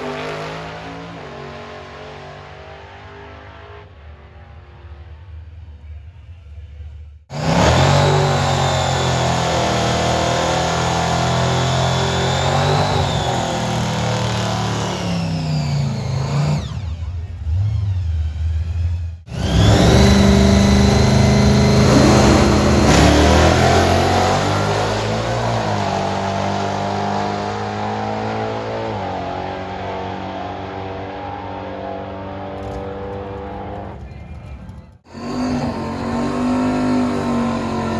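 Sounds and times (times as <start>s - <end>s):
drag-racing engines at high revs: 0.0s - 5.2s, 7.3s - 37.9s.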